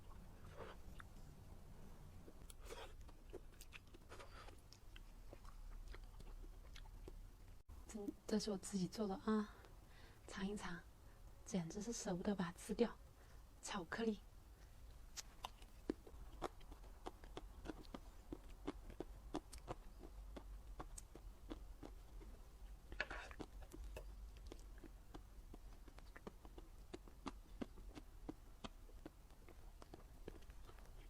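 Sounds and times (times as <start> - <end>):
wet chewing mouth sounds: 2.3 - 7.6, 15.1 - 31.0.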